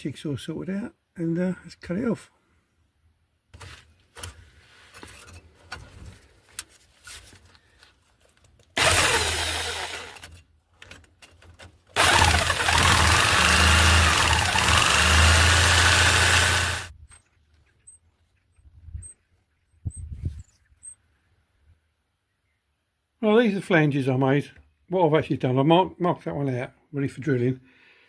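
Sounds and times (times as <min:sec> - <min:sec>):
jigsaw cutting steel pipe: 0:08.8 - 0:10.3, 0:12.0 - 0:16.9.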